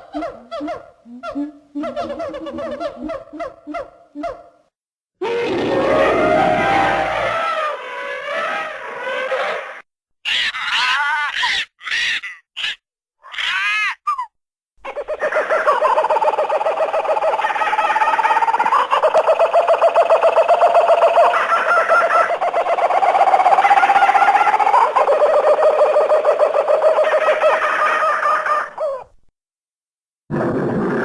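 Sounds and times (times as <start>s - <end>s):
animal chattering: 14.9s - 27.8s.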